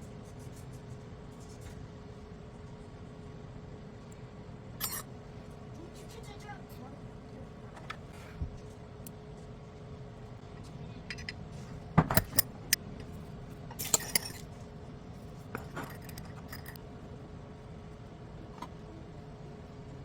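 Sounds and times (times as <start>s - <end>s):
faint steady hum: 0.0s - 20.0s
small hard objects clinking: 13.8s - 14.5s.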